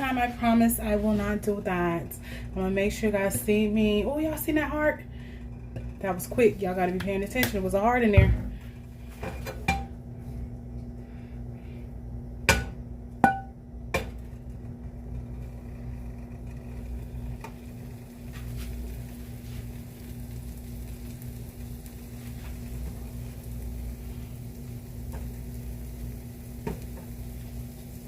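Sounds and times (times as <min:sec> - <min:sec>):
low hum: 0:00.0 - 0:28.0.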